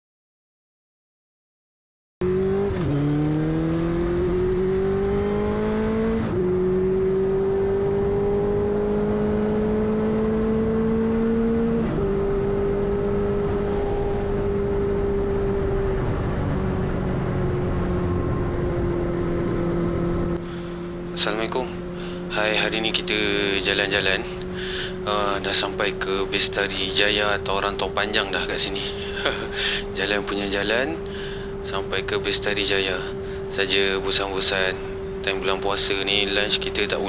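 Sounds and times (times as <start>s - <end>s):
motorcycle engine accelerating through gears: 2.2s - 37.0s.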